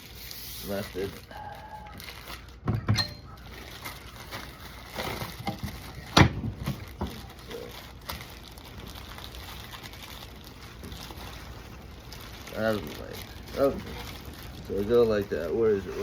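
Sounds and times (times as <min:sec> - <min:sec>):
knocks and clatter on workbench: 0:05.4 - 0:07.2.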